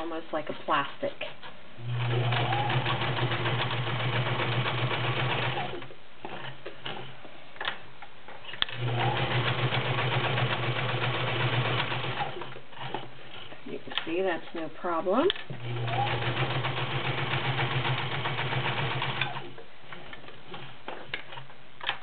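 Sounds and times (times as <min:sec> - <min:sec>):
sewing machine stitching: 0:01.8 - 0:07.1, 0:08.6 - 0:13.5, 0:15.3 - 0:19.6.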